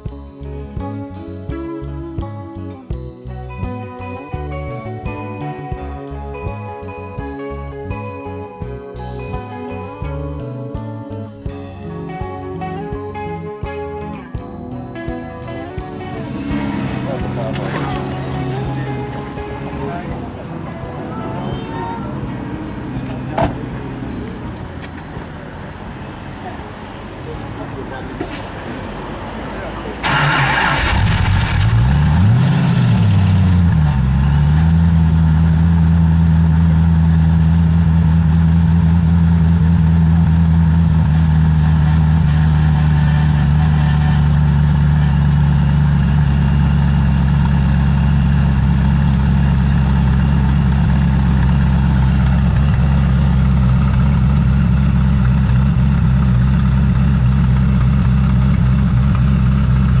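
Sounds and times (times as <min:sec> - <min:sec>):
car engine revving and idling: 0:15.6 - 1:00.0.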